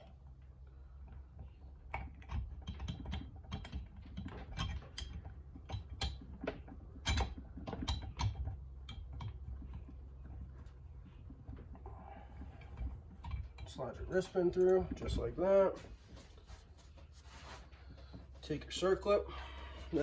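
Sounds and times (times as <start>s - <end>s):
metal engine parts clicking: 1.0s - 15.6s.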